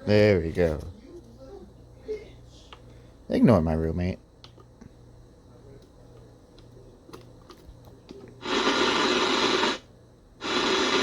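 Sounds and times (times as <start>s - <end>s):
radio static hiss: 8.4s - 11.0s.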